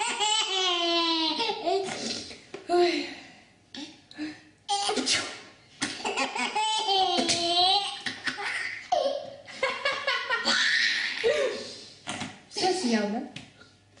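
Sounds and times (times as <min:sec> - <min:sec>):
baby laughing: 0:00.0 - 0:02.0, 0:05.8 - 0:11.4
person sneezing: 0:01.9 - 0:02.3, 0:04.8 - 0:06.0.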